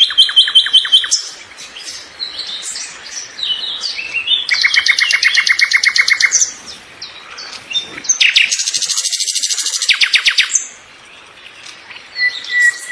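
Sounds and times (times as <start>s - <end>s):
bird chirps: 0.0s - 12.9s
songbird trilling: 0.0s - 12.9s.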